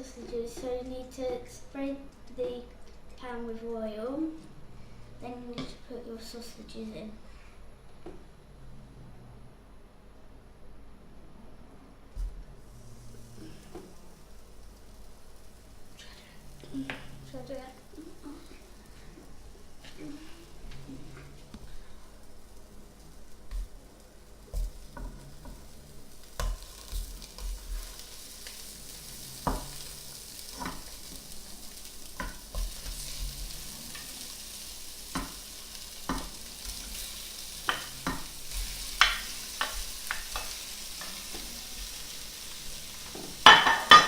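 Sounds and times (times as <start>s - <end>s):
sausages sizzling in a pan: 12.2s - 44.0s.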